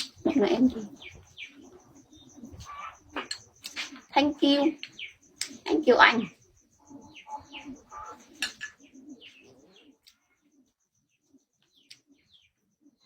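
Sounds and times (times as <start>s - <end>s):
dove cooing: 0.0s - 13.0s
small birds chirping: 0.0s - 13.0s.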